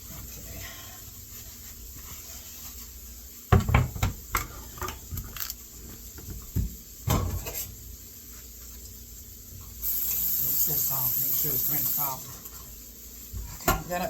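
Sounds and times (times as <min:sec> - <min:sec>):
kitchenware clattering: 0:03.6 - 0:05.6, 0:06.3 - 0:07.8, 0:13.4 - 0:14.0.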